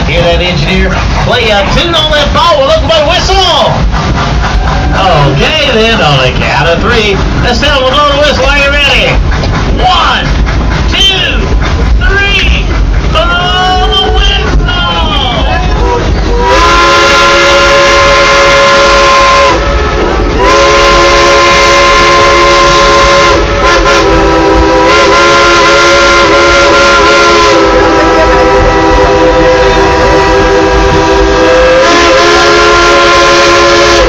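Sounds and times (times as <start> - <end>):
steam locomotive chime whistle: 15.6 - 34.0.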